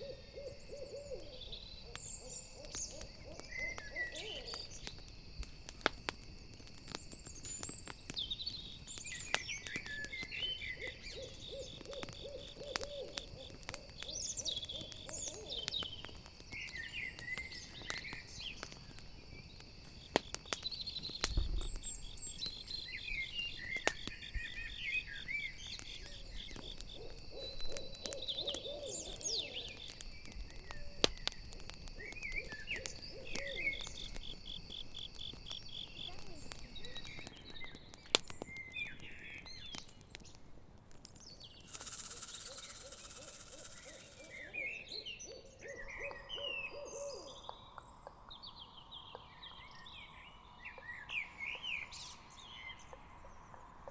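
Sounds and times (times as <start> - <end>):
owl hooting: 0.0 - 4.7, 10.7 - 15.7, 26.7 - 29.8, 41.7 - 47.6
crickets chirring: 0.0 - 39.7, 41.2 - 53.9
campfire crackling: 0.0 - 44.9, 47.3 - 53.9
short high chirps: 41.7 - 44.5.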